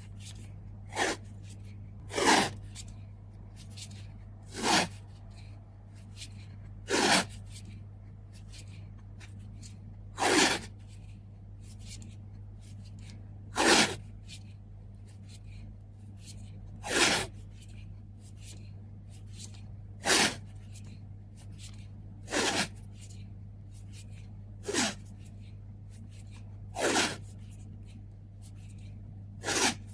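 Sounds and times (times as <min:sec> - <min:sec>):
steady low hum: 0:00.0 - 0:16.8.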